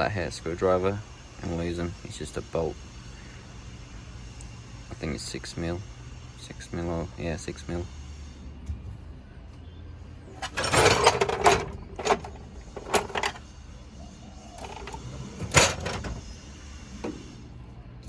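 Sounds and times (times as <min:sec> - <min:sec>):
rattling scrape: 0:10.3 - 0:13.4, 0:14.6 - 0:16.4
hand tools clinking on metal: 0:10.4 - 0:13.4, 0:14.6 - 0:16.3.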